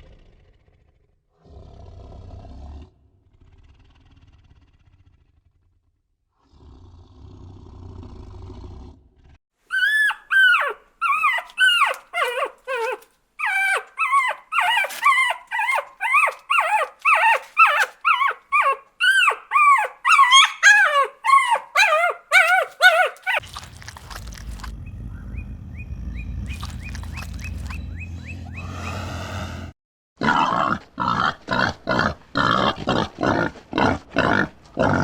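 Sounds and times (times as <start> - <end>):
animal yelping: 9.7 - 29.6, 30.2 - 35.0
low rumbling noise: 23.5 - 29.7.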